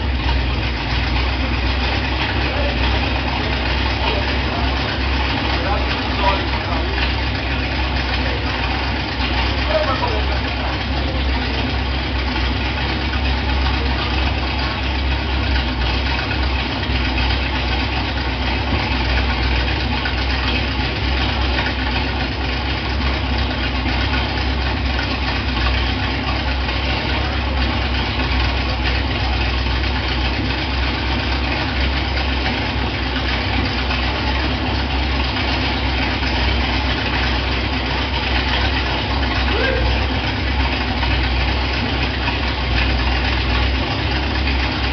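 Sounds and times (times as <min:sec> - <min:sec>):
engine idling: 0:00.0 - 0:44.9.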